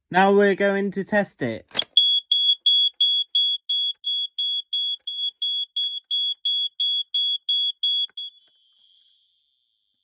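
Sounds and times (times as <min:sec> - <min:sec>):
smoke alarm beeping: 0:02.0 - 0:09.3.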